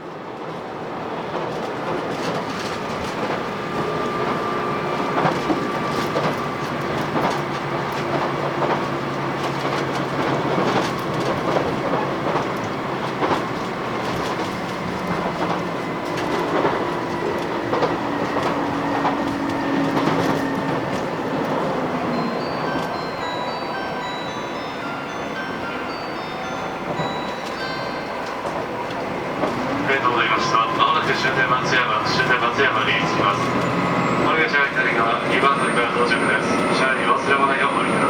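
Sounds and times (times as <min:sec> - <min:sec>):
rumble of running train: 0:00.0 - 0:38.0
train wheels clacking over rail joints: 0:01.3 - 0:22.0, 0:26.9 - 0:35.5.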